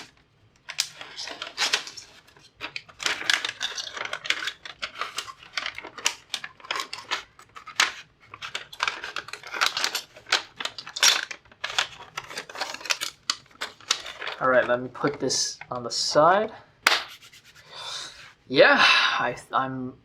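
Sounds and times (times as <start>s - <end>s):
hands clicking and tapping parts: 0.0s - 15.9s
packaging rustling: 0.0s - 15.9s.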